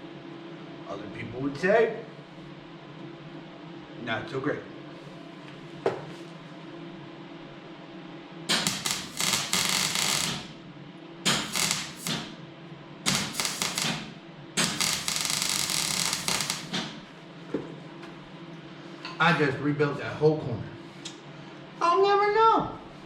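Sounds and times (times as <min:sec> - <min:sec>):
crackling arc welding: 0:08.5 - 0:10.6, 0:11.3 - 0:12.4, 0:13.1 - 0:17.1.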